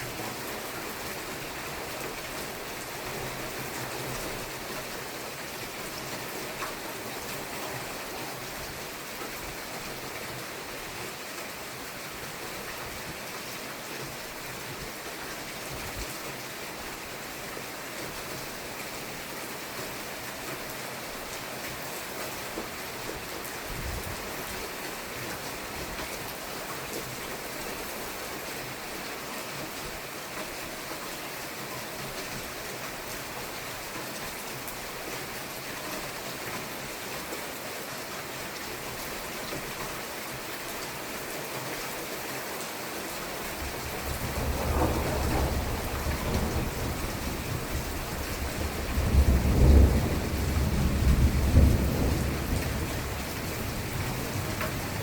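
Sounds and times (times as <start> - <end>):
steady rain falling: 0.0 - 55.0
deep rumble of thunder: 43.6 - 55.0.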